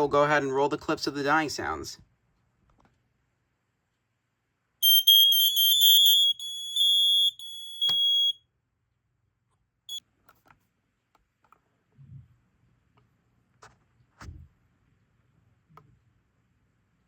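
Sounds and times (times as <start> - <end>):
smoke alarm stuttering tone: 4.8 - 8.4
faint smoke alarm chirp: 4.8 - 8.5.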